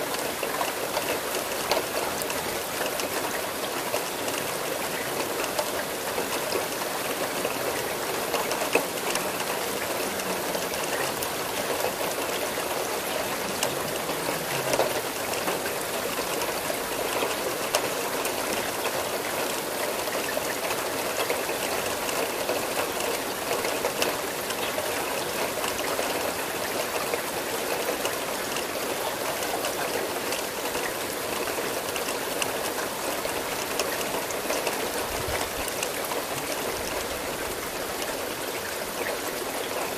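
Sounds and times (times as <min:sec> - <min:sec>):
raindrops ticking: 0:00.0 - 0:39.9
steady rain falling: 0:00.0 - 0:39.9.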